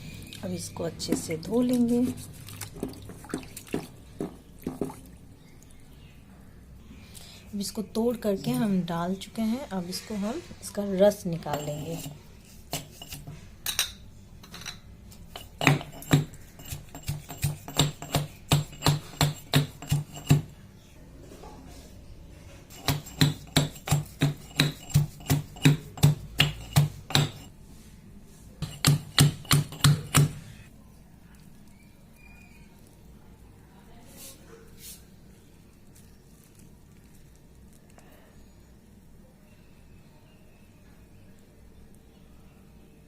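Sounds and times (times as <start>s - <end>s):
pestle pounding leaves: 15.3s - 20.5s, 22.7s - 27.5s, 28.6s - 30.4s.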